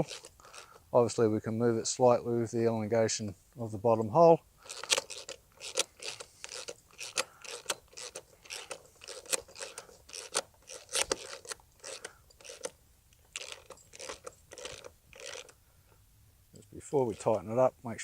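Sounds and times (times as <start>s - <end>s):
ratchet wrench clicking: 4.6s - 15.6s.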